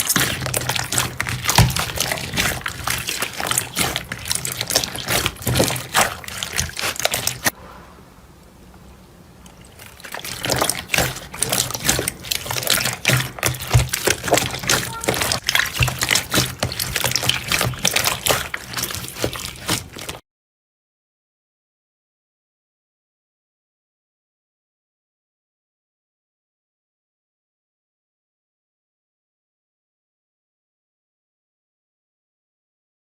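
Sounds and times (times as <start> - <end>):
slime squelching wet clicks: 0.0 - 7.5, 9.5 - 20.2.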